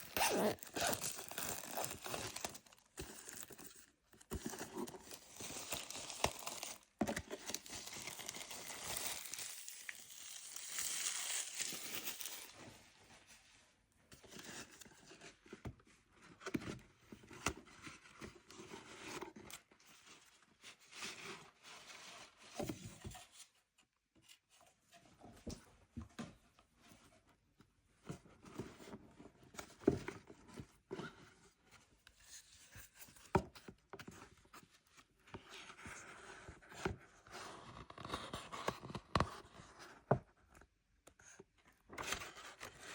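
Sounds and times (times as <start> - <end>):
plastic packaging tearing: 0.0 - 3.5, 5.1 - 12.6.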